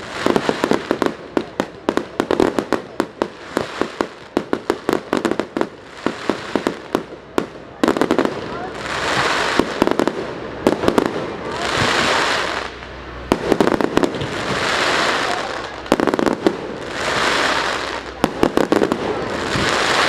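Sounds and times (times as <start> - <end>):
fireworks popping and hissing: 0.0 - 20.0.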